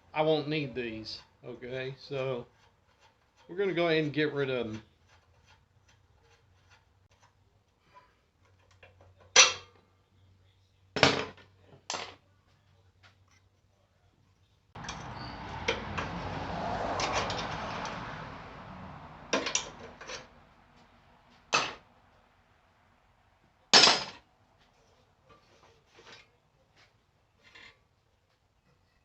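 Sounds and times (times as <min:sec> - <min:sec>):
sharp metal knocks: 0:21.5 - 0:21.8.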